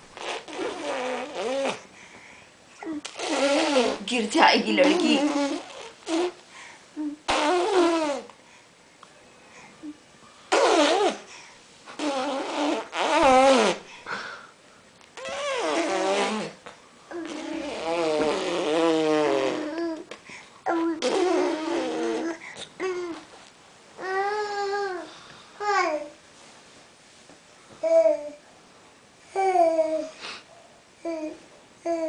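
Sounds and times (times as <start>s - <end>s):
baby babbling and squealing: 20.7s - 23.2s.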